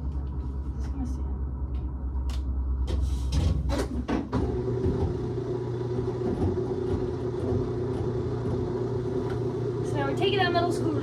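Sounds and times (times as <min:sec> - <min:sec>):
laundry machine motor hum: 0:03.8 - 0:11.0.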